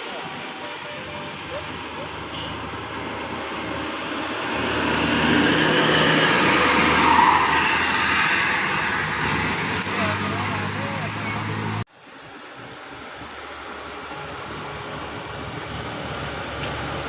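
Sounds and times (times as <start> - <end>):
vehicle engine and tyres passing: 0.0 - 17.0.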